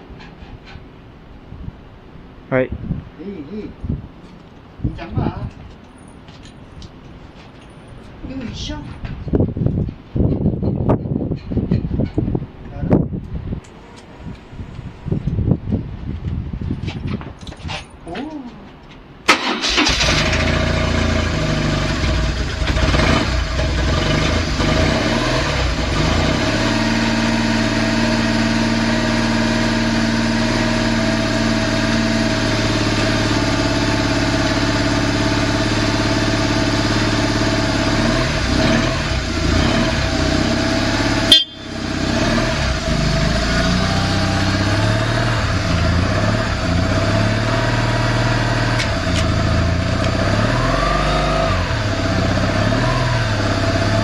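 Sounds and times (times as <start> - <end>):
motorcycle engine idling: 40.9 - 41.9.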